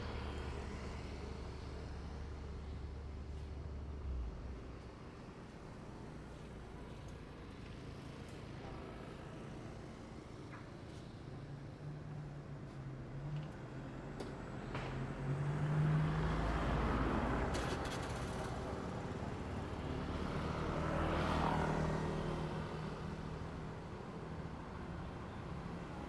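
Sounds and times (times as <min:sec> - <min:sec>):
engine hum and tyre noise: 0:12.8 - 0:26.0
vehicles passing by: 0:14.7 - 0:26.0.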